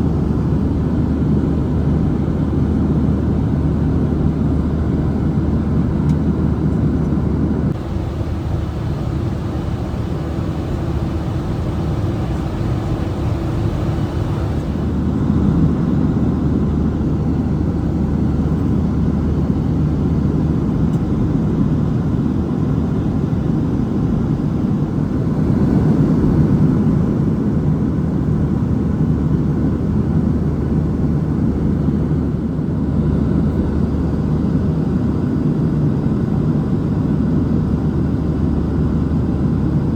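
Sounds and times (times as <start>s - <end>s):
jet engines droning: 0.1s - 19.8s
airflow rushing: 7.8s - 15.4s.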